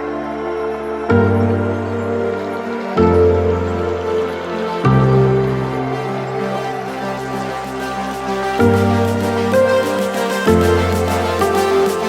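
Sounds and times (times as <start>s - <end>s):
soft new-age chords: 0.0s - 12.0s.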